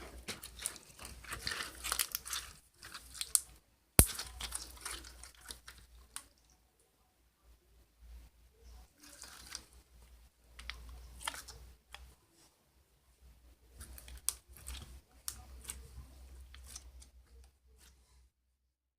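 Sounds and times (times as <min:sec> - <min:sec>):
slime sticky clicks and pops: 0:04.0 - 0:04.2.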